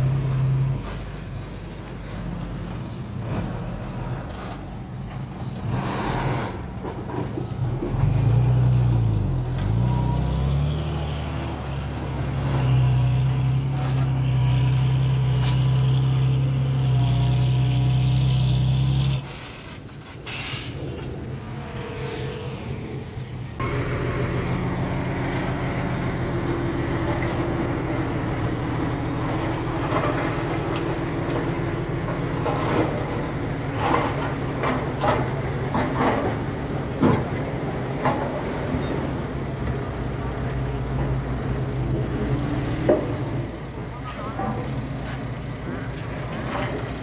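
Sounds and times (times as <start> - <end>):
heavy diesel engine under load: 0.0 - 47.0
air brake hisses: 20.2 - 20.8.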